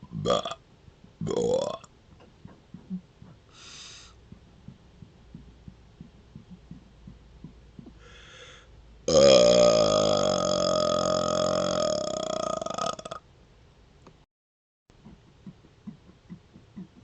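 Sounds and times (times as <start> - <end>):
man gulping air: 0.3 - 3.2
long loud burp: 1.3 - 1.9, 9.1 - 13.2
short breaths: 3.5 - 4.2, 8.0 - 8.8.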